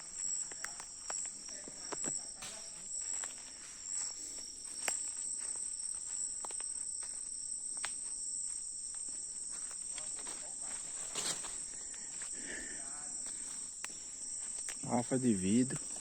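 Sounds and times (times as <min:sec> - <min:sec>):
shrill insect chorus: 0:00.0 - 0:16.0
light clicks and snaps: 0:00.5 - 0:02.6, 0:07.8 - 0:08.0.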